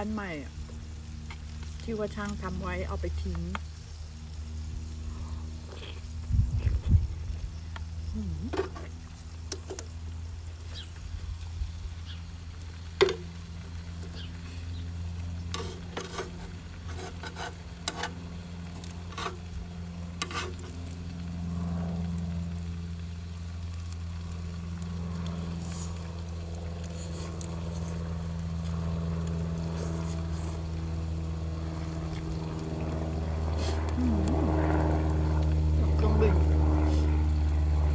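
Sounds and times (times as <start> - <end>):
airplane overhead: 0.0 - 37.9
food sizzling on a grill: 8.0 - 21.5, 22.4 - 28.5
low drone: 13.0 - 37.9.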